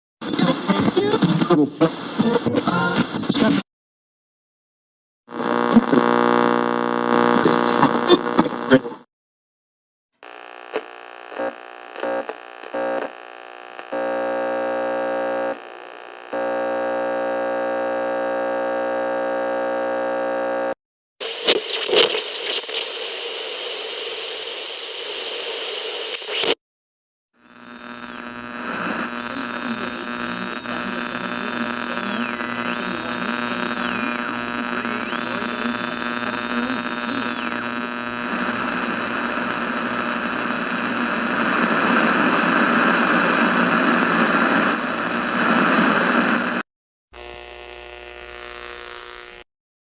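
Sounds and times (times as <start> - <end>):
radio static hiss: 0.2 - 3.6, 5.3 - 9.1, 10.2 - 26.6, 27.4 - 49.4
electrical buzz: 5.3 - 8.7, 10.2 - 24.7, 27.4 - 42.9, 47.2 - 49.5
buzzy bursts: 10.2 - 23.9.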